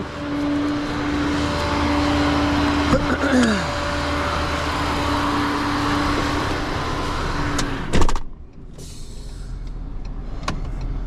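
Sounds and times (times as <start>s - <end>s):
motor humming: 0.0s - 7.8s.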